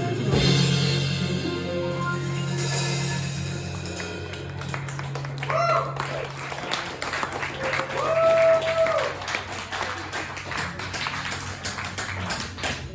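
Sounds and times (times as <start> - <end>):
audience clapping: 3.8 - 12.9.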